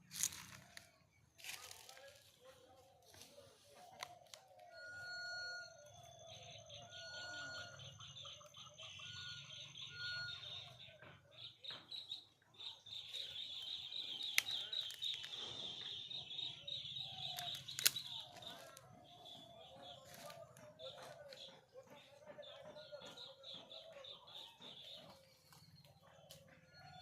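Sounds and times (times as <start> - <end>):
chickens clucking: 6.3 - 27.0.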